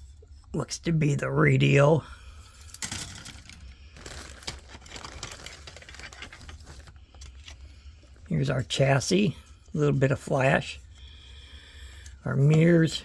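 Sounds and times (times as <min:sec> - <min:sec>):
plastic crinkling: 0:02.5 - 0:08.3
plastic parts clicking and rustling: 0:02.5 - 0:08.3.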